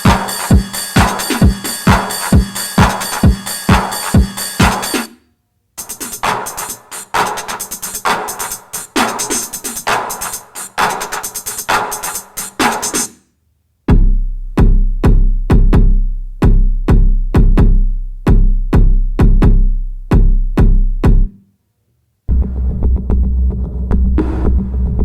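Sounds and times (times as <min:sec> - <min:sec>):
kick drum with deep bass: 0:00.0 - 0:04.8, 0:13.9 - 0:21.3, 0:22.3 - 0:25.0
electronic drum machine beat: 0:00.0 - 0:05.1, 0:05.8 - 0:13.1, 0:22.3 - 0:25.0
low throbbing synth: 0:22.3 - 0:25.0.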